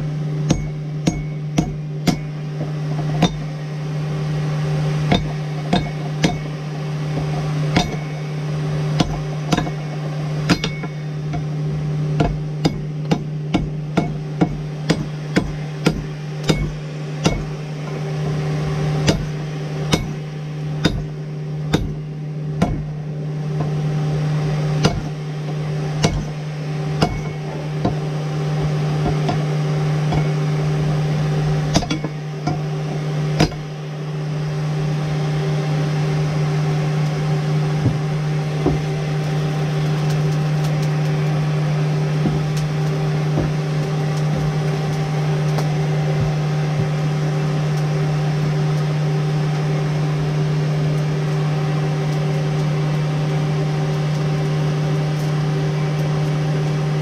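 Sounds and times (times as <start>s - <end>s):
electric forge blower humming: 0.0s - 57.0s.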